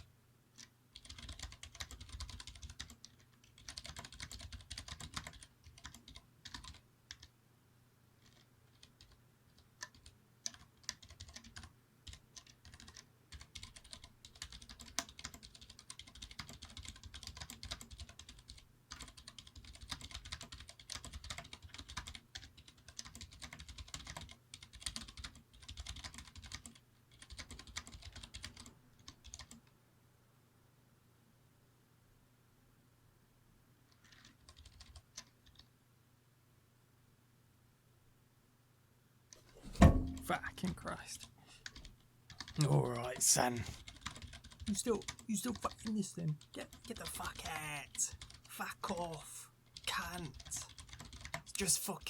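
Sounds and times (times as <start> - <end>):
mechanical keyboard typing: 0.6 - 7.3, 8.2 - 29.7, 33.9 - 35.7, 41.6 - 49.1, 49.7 - 51.7.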